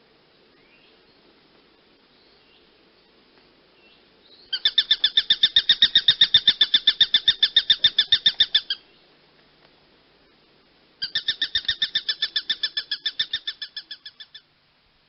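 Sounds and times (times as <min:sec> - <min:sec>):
hawk chattering call: 0:04.5 - 0:08.8, 0:11.0 - 0:14.5.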